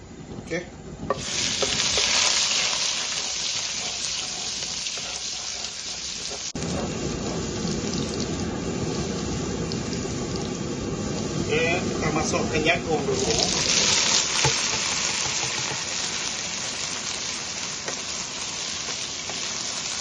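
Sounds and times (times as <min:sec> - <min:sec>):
sizzling in a hot pan: 0:01.1 - 0:20.0.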